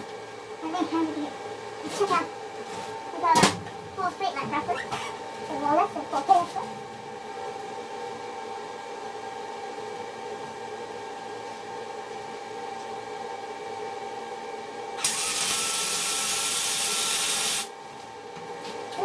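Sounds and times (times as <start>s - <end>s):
power tool whine: 15.0s - 17.7s.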